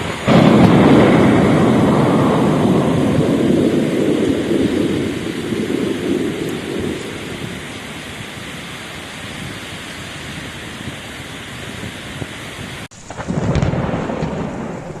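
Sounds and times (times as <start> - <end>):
deep rumble: 0.0 - 8.6
heavy rain falling: 0.0 - 15.0.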